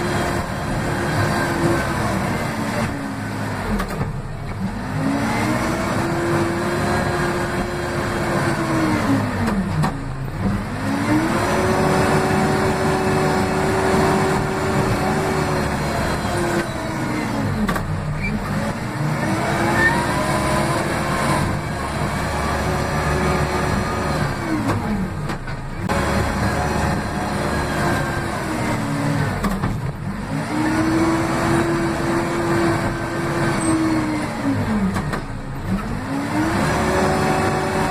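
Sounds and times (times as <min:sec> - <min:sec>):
diesel engine revving: 0:00.0 - 0:37.9.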